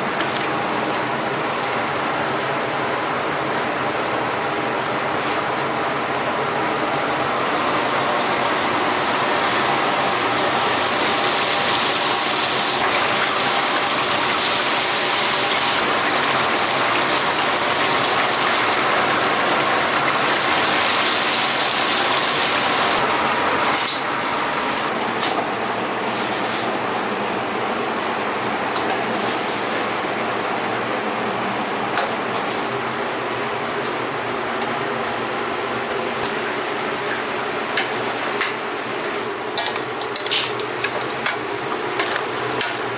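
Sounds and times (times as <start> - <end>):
chicken sizzling in hot oil: 7.2 - 25.3.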